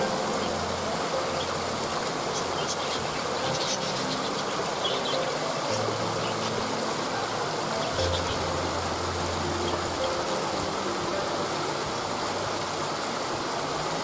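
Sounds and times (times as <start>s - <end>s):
waterfall rushing: 0.0s - 14.0s
high bird chirps: 2.3s - 6.6s.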